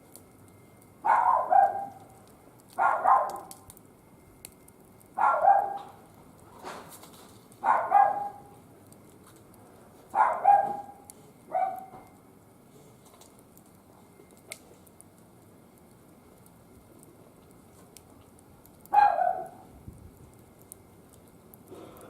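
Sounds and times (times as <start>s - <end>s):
dog barking: 1.0s - 2.0s, 2.8s - 3.5s, 5.2s - 6.0s, 7.6s - 8.5s, 10.2s - 12.0s, 18.9s - 19.6s.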